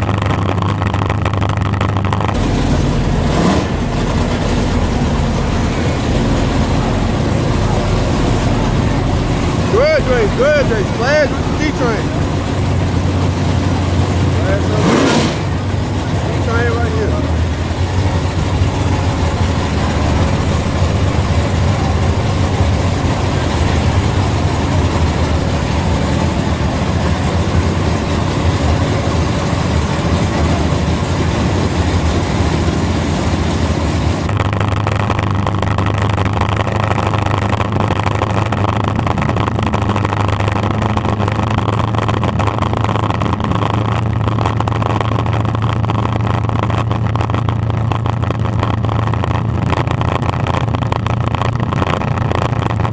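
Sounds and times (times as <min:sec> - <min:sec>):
race car engines droning: 0:00.0 - 0:52.9.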